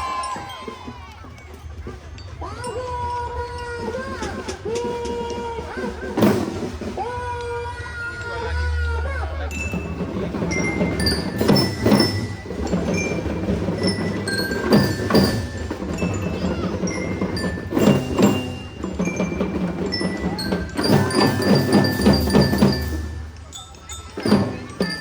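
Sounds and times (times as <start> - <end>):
drum strikes: 3.9 - 25.0
ringing bell notes melody: 8.2 - 25.0.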